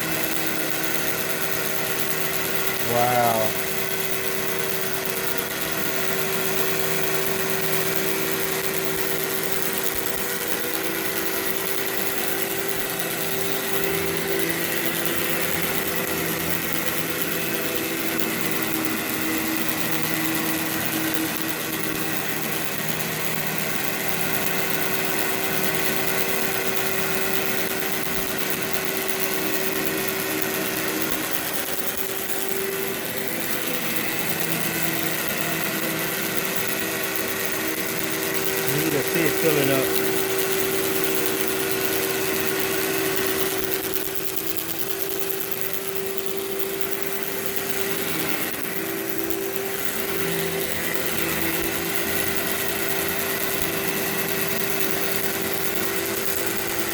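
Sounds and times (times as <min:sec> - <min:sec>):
vacuum cleaner running on carpet: 0:00.0 - 0:56.9.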